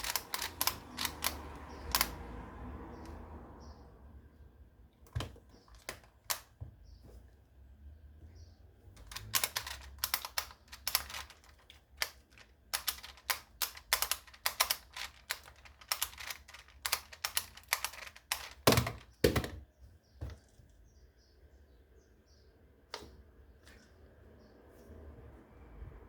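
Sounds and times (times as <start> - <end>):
plastic clicking and clacking: 0.0 - 2.2, 5.0 - 6.6, 9.0 - 19.6.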